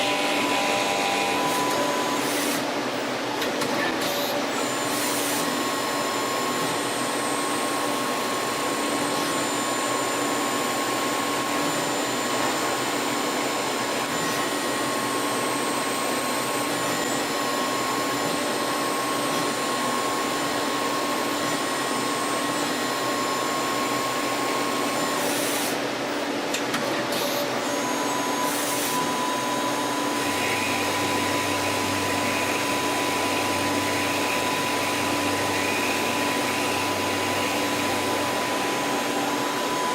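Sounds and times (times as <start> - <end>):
lathe machining metal: 0.0 - 3.1, 27.1 - 39.9
steady machine whine: 0.0 - 3.4, 4.4 - 39.9.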